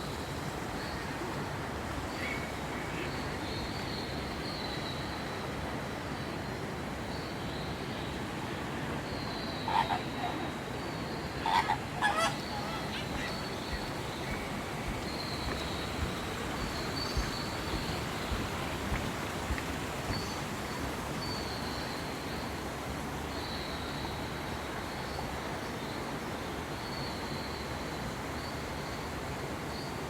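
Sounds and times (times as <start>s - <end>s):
steady background hiss: 0.0s - 30.0s
honking animal calls: 11.4s - 15.0s.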